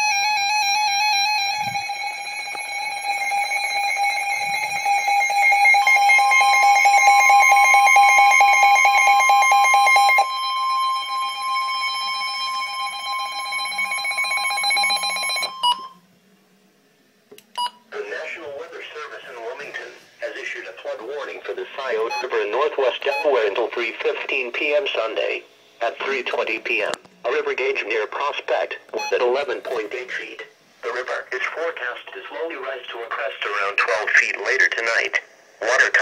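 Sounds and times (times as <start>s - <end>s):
higher alarm tone: 0.0s - 16.0s
steady electronic alarm tone: 0.0s - 16.0s, 22.1s - 23.9s.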